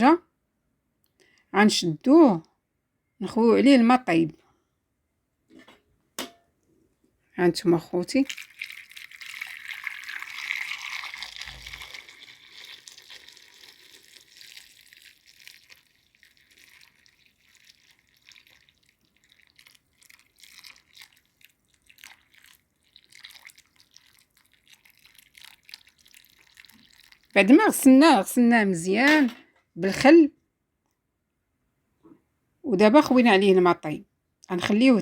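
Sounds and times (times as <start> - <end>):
liquid pouring over lemons: 8.1 - 27.9
faint drips: 8.2 - 27.8.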